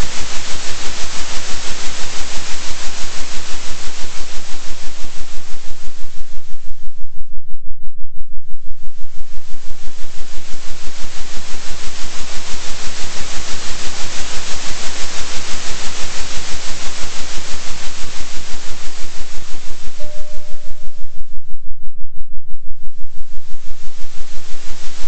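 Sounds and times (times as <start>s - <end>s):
faint steady tone: 19.8s - 21.6s.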